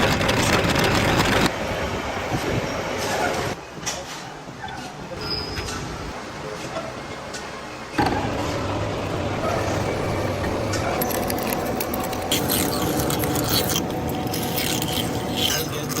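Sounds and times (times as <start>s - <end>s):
mechanical hum: 0.0s - 16.0s
scraping and clicking: 10.7s - 16.0s.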